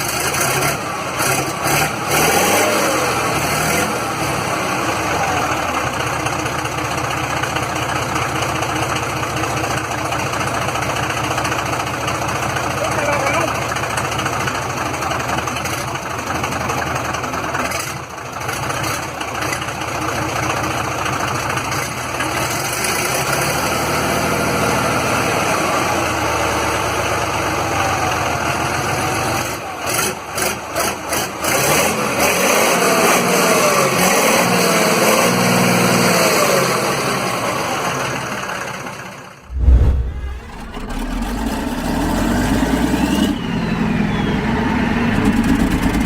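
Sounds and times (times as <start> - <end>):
loud diesel truck engine revving: 0.0 - 6.0, 21.8 - 38.3, 39.5 - 46.0.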